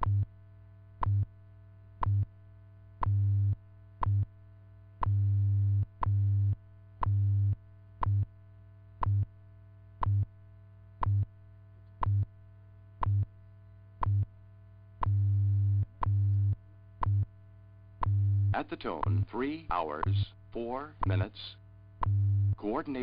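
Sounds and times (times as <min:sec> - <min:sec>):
radio time signal ticks: 0:01.0 - 0:01.3, 0:02.0 - 0:02.3, 0:03.0 - 0:03.2, 0:04.0 - 0:04.3, 0:05.0 - 0:05.2, 0:05.8 - 0:06.3, 0:07.0 - 0:07.3, 0:08.0 - 0:08.3, 0:09.0 - 0:09.3, 0:10.0 - 0:10.3, 0:11.0 - 0:11.3, 0:12.0 - 0:12.3, 0:13.0 - 0:13.3, 0:14.0 - 0:14.3, 0:15.0 - 0:17.3, 0:18.0 - 0:20.3, 0:20.9 - 0:23.0
low buzzing pulses: 0:12.0 - 0:12.3, 0:13.0 - 0:21.3, 0:21.9 - 0:23.0.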